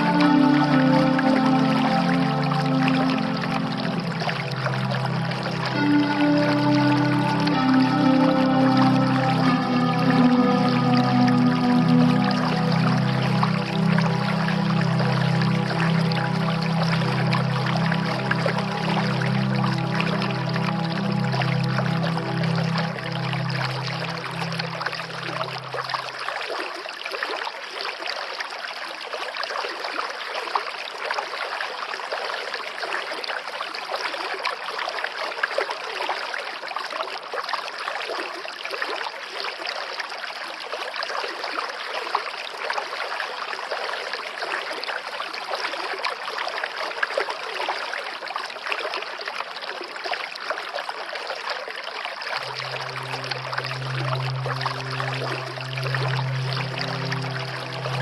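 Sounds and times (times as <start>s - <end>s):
low held music tone: 0.0s - 26.3s, 52.4s - 58.0s
rain patter: 0.0s - 26.6s, 52.4s - 58.0s.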